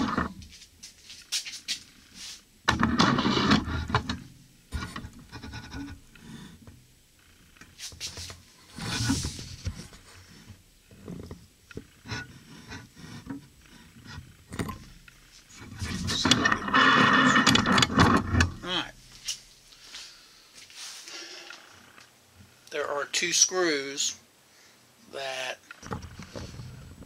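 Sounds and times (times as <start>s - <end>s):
rubbing and scraping: 0.0s - 6.6s, 7.8s - 19.5s.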